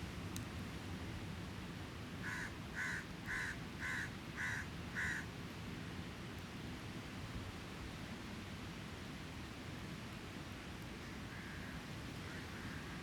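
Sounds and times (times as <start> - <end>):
crow cawing: 2.3 - 5.2.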